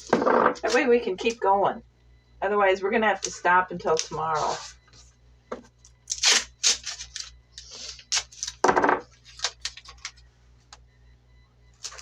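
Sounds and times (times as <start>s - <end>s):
tape ripping off a roll: 6.1s - 10.1s.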